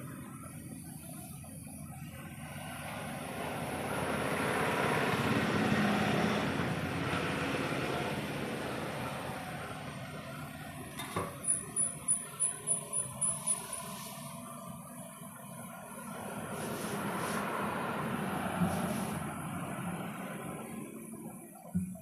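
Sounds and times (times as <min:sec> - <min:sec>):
vehicle passing by: 0:02.5 - 0:09.9.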